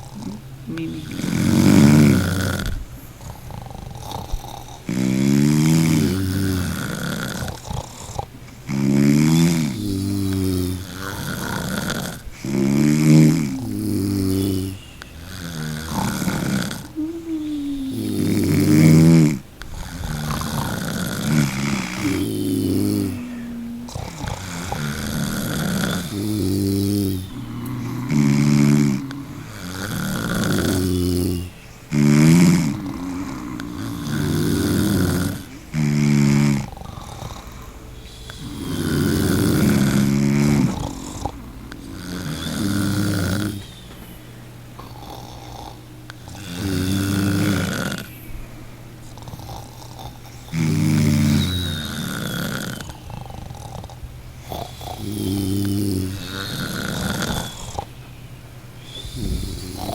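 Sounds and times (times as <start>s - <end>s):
person snoring loudly: 0.0s - 43.8s, 44.8s - 48.2s, 49.0s - 57.9s, 58.8s - 59.9s
quiet breathing: 0.0s - 59.9s.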